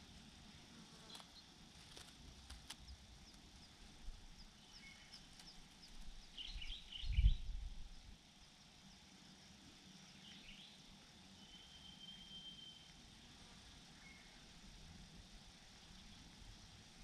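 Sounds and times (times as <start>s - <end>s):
faint high bird chirps: 4.5s - 7.6s, 10.1s - 13.0s.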